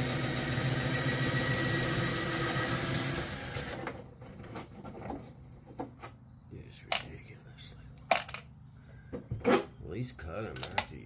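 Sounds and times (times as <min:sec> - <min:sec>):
power drill running: 0:00.0 - 0:03.8.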